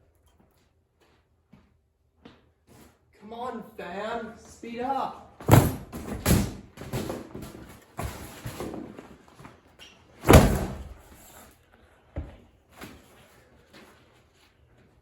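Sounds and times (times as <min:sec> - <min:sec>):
thuds and knocks: 0:05.4 - 0:08.8, 0:10.2 - 0:11.0.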